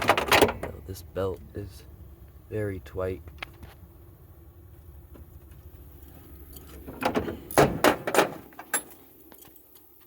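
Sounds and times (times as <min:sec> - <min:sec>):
sharp knocks and clatters: 0:06.8 - 0:09.0.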